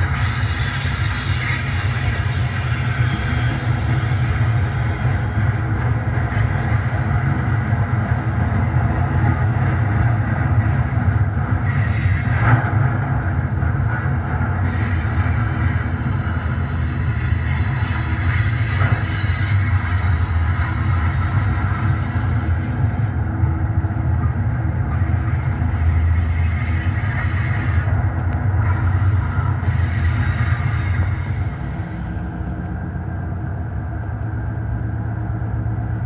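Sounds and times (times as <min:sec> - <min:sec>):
high wheel squeal: 0:00.0 - 0:07.5, 0:10.3 - 0:23.2, 0:24.8 - 0:32.6
locomotive rumble: 0:00.0 - 0:36.0.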